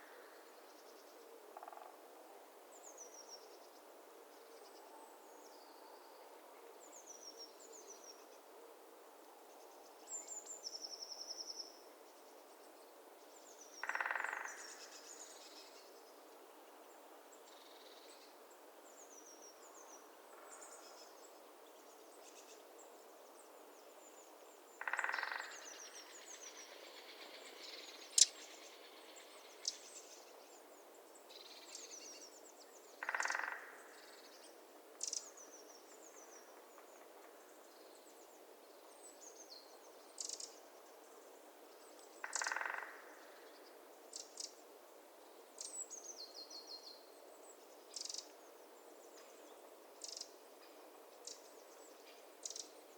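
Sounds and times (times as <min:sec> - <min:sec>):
small birds chirping: 0:25.0 - 0:30.6, 0:45.6 - 0:48.5, 0:51.2 - 0:52.8.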